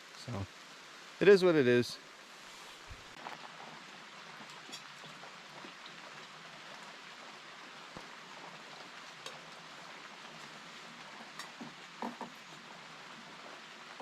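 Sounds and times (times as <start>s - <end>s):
light rain falling: 0.0s - 14.0s
faint drip ticks: 4.3s - 12.6s.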